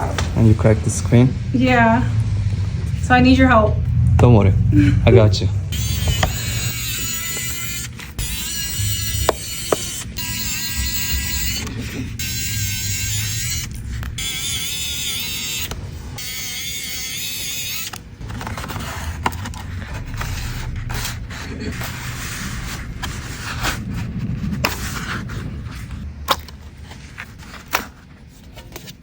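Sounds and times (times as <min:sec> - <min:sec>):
squeaky wavering sound: 0:05.6 - 0:26.0
hand tools creaking and scraping: 0:05.7 - 0:29.0.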